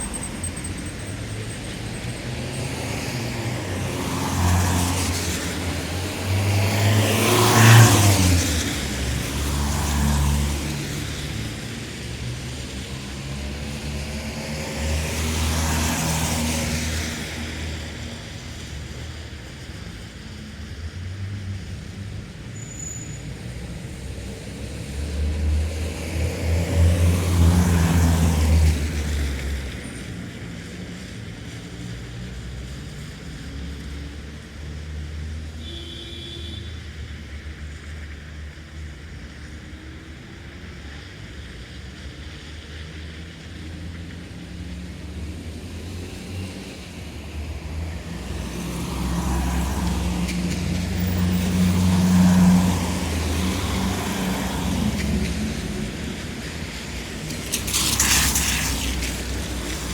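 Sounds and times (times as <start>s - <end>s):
rumble of traffic engines: 0.0s - 59.9s
tyres hissing on wet asphalt: 0.0s - 59.9s
vehicle passing close: 43.6s - 59.9s.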